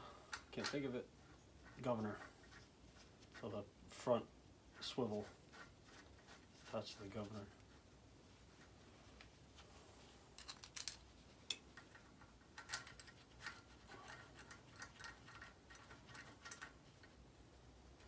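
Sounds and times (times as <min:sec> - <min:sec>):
metal parts clicking and tapping: 0:00.3 - 0:02.6, 0:10.4 - 0:17.2.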